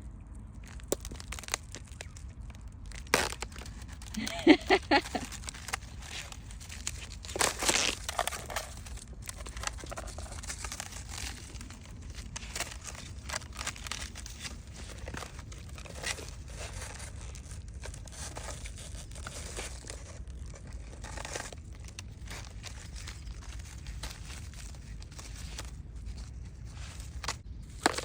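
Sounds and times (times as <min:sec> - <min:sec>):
footsteps crunching through ice: 0:00.7 - 0:14.3.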